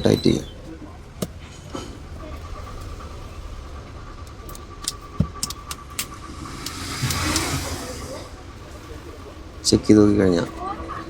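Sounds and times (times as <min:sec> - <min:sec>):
steady low hum: 0:03.1 - 0:08.9.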